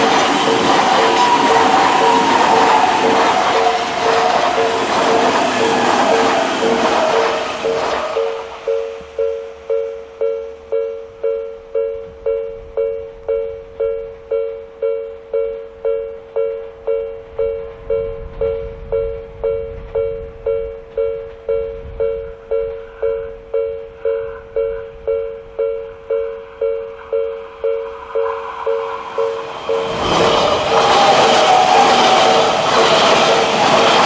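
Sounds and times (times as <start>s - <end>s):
level-crossing warning bell: 0.0s - 34.0s
faint low rumble: 8.8s - 29.4s.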